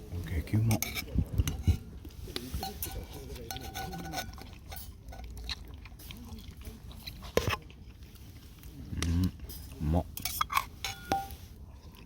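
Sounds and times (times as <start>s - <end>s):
utensils clinking on tableware: 2.6s - 5.3s, 9.5s - 11.4s.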